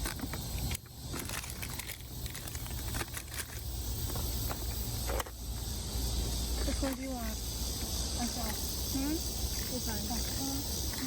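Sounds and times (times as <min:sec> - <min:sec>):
wrappers crinkling: 0:00.0 - 0:03.7.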